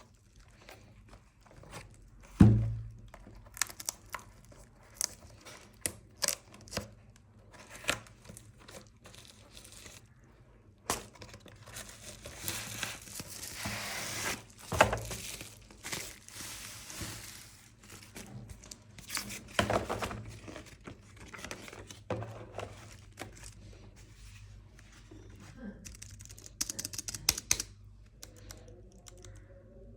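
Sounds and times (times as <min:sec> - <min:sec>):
wrapping crinkling and tearing: 0:03.2 - 0:06.9, 0:10.9 - 0:19.5
packaging rustling: 0:10.9 - 0:24.4.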